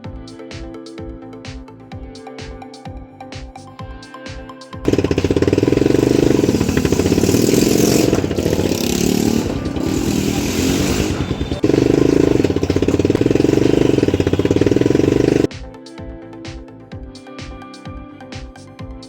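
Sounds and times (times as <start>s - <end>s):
motorcycle engine running: 4.8s - 15.5s.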